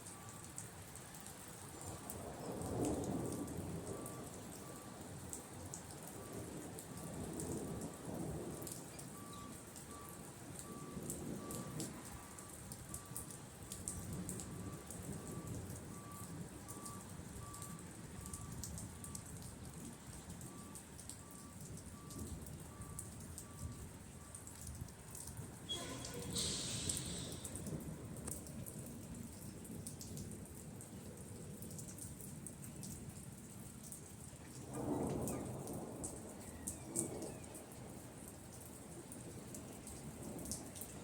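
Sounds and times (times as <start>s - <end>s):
rain falling: 0.0s - 41.0s
thunder rumbling: 6.1s - 24.4s, 25.3s - 29.2s, 34.6s - 37.3s.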